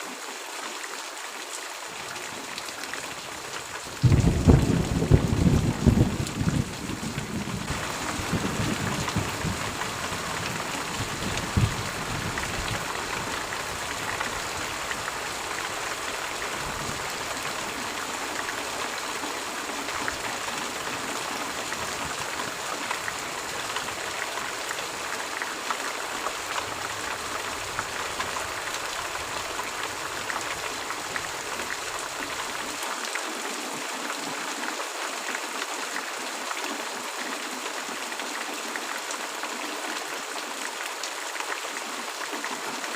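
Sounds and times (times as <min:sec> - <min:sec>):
steady rain: 0:00.0 - 0:42.9.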